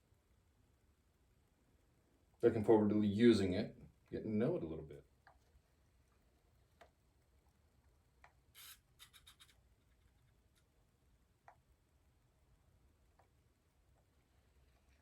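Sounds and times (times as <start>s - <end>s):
faint clicks: 5.2s - 11.8s
scratchy rub: 8.5s - 10.7s.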